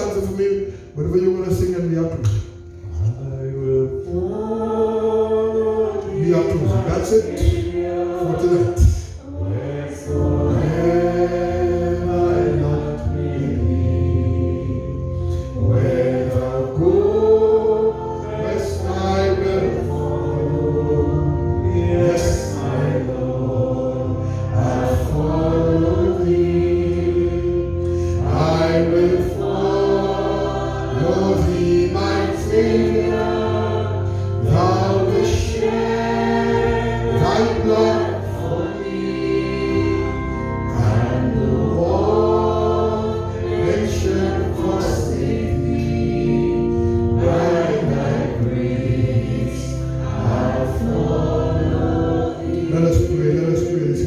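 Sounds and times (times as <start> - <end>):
congregation singing a hymn: 0.0 - 54.0.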